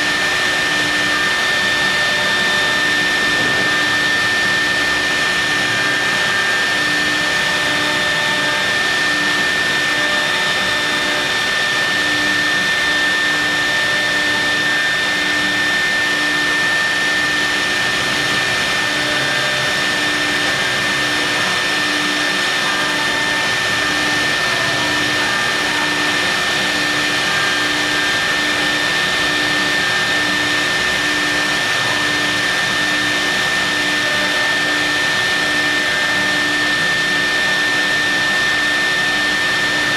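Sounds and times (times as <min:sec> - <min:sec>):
high-pitched spindle whine: 0:00.0 - 0:39.9
milling machine rushing noise: 0:00.0 - 0:39.9.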